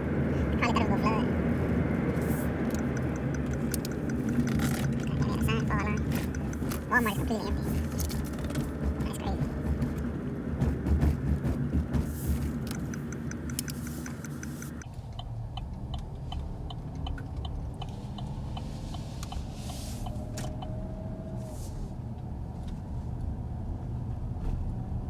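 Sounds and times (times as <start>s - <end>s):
car engine and tyres rumbling: 0.0s - 25.0s
turn signal ticking: 0.1s - 20.8s.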